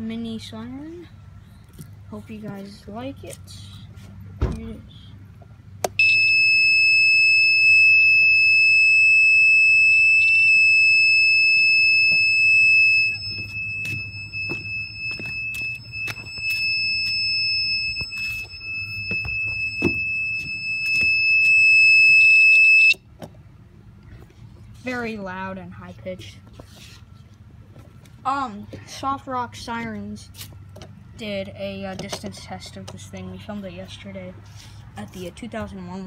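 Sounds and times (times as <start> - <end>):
high-pitched electronic siren tone: 6.0 - 23.0.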